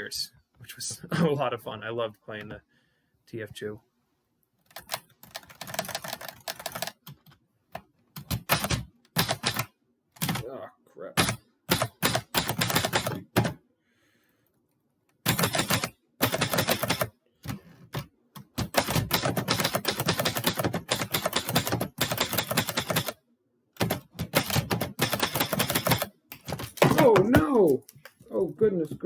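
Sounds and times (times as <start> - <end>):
typewriter keys clacking: 4.7 - 7.1, 8.2 - 10.4, 11.2 - 13.6, 15.3 - 17.1, 18.0 - 23.2, 23.8 - 28.0.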